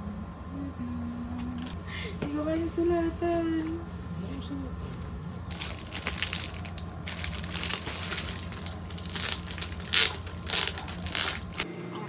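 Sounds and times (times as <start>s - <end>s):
crinkling and rustling: 1.4s - 11.6s
loud crackles: 5.5s - 11.6s.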